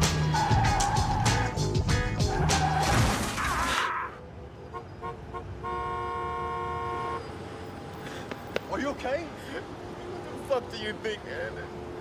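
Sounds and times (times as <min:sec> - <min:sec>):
music: 0:00.0 - 0:03.2
loud vehicle noise: 0:00.0 - 0:12.0
car horn beeping: 0:04.7 - 0:07.4.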